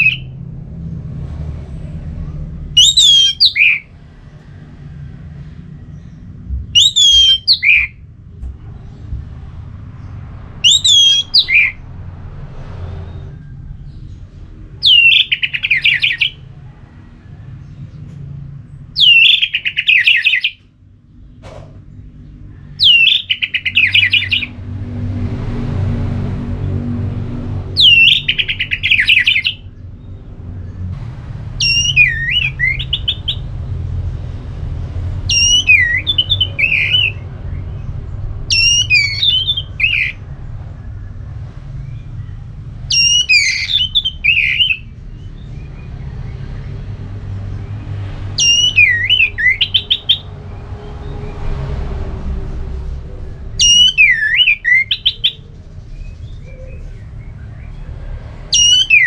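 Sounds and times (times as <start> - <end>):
thrush singing: 0.0 - 0.3, 2.8 - 3.9, 6.8 - 8.0, 10.5 - 11.8, 14.8 - 16.4, 19.0 - 20.6, 22.8 - 24.5, 27.7 - 29.7, 31.6 - 33.5, 35.3 - 37.3, 38.5 - 40.3, 42.9 - 44.9, 48.3 - 50.9, 53.1 - 55.6, 58.5 - 59.0.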